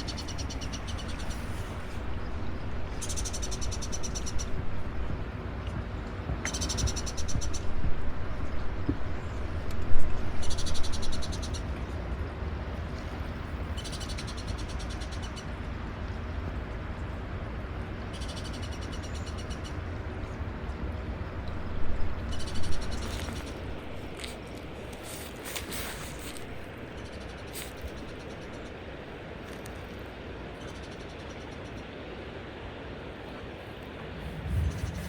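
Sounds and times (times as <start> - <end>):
steady low rumble: 0.0 - 13.8, 19.3 - 25.4, 32.9 - 35.0.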